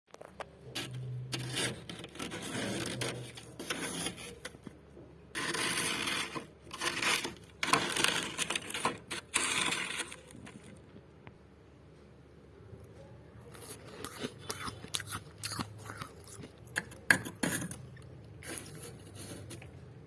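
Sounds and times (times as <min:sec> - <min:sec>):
freezer frost being scraped: 0:00.7 - 0:04.8, 0:05.4 - 0:10.8, 0:13.5 - 0:17.8, 0:18.4 - 0:19.9.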